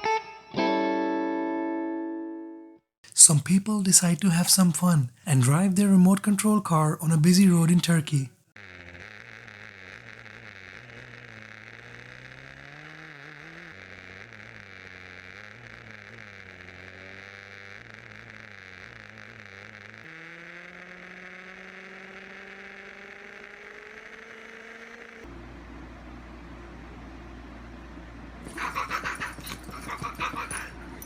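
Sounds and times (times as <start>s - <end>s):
remote-control car motor: 8.6s - 21.2s.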